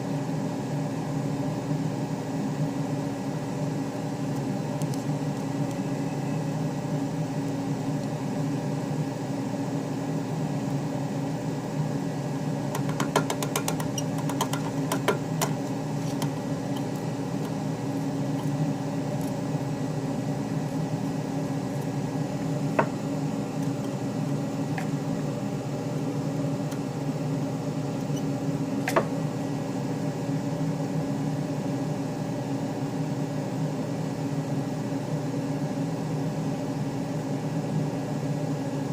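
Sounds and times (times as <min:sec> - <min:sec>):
cnc machine motor hum: 0:00.0 - 0:31.0.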